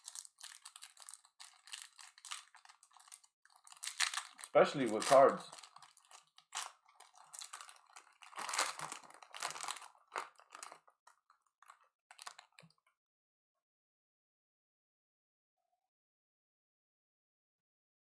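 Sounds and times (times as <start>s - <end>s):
trading cards clicking and rustling: 0.0s - 10.7s.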